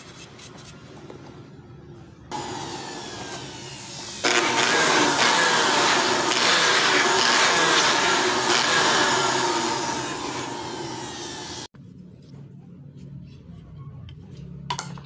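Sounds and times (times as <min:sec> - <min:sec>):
cleaning tool rushing noise: 0:02.3 - 0:11.7.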